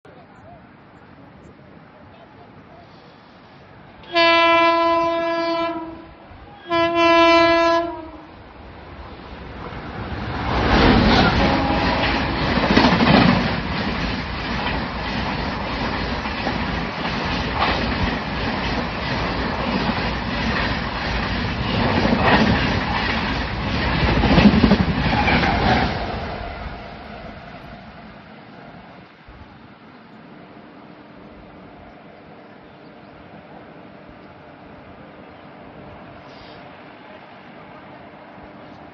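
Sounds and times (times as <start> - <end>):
train passing with rail noise: 0.0 - 38.9
wheels clacking over rail joints: 9.6 - 26.8.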